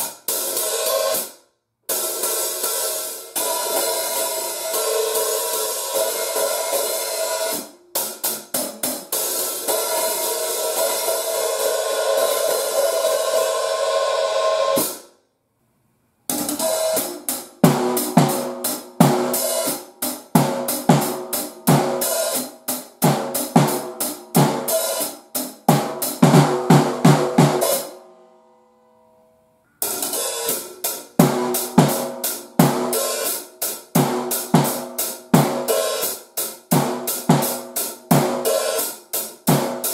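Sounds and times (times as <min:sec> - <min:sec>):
hi-hat cymbals: 0:00.0 - 0:15.1, 0:16.3 - 0:27.9, 0:29.8 - 0:39.9
snare drum: 0:16.3 - 0:27.9, 0:29.8 - 0:39.9
kick drum: 0:36.8 - 0:38.4.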